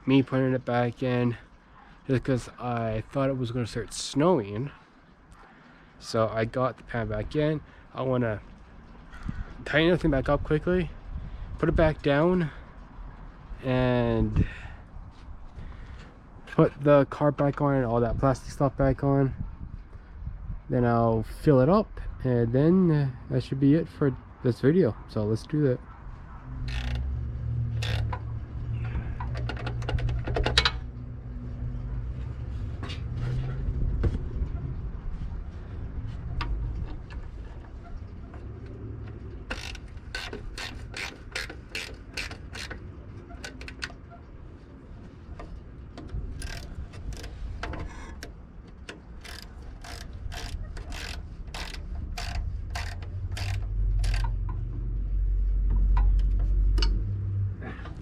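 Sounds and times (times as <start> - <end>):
ratchet wrench clicking: 26.6 - 28.3, 39.4 - 43.9, 46.3 - 48.3, 49.2 - 54.4.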